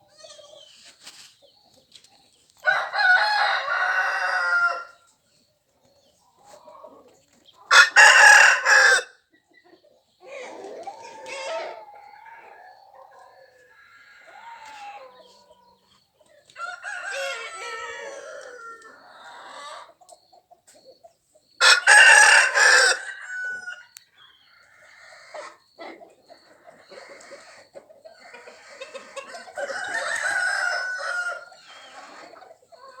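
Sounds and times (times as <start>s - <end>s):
chickens clucking: 0.0s - 33.0s
rooster crowing: 2.6s - 5.0s, 7.7s - 9.1s, 16.6s - 19.7s, 21.6s - 24.0s, 29.3s - 32.2s.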